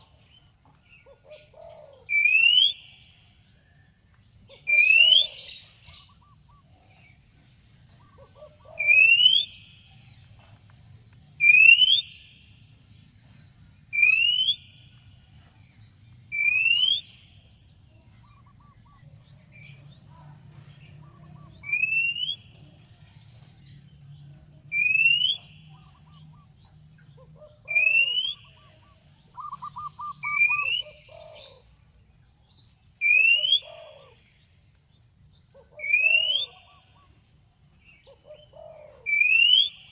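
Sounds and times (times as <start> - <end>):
bird trill: 1.0 - 13.0, 13.8 - 31.8, 32.6 - 34.6, 35.4 - 39.9
bird singing rising whistle: 2.0 - 2.9, 8.8 - 9.6, 11.4 - 12.2, 13.9 - 14.8, 21.6 - 22.5, 24.7 - 25.5, 27.7 - 28.5, 29.4 - 31.0, 35.8 - 36.6, 39.1 - 39.9.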